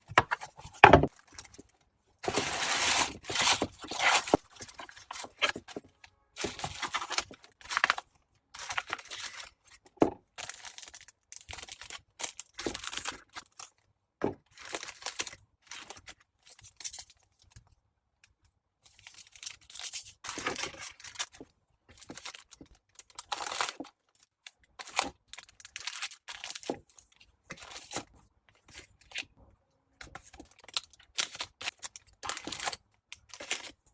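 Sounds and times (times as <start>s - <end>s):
packaging tearing and crinkling: 2.2s - 5.8s, 6.4s - 8.0s, 8.6s - 9.6s.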